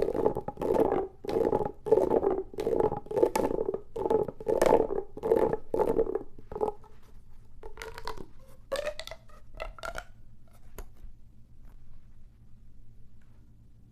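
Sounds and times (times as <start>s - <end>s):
plastic pop tubes popping: 0.0s - 6.9s, 7.6s - 10.9s.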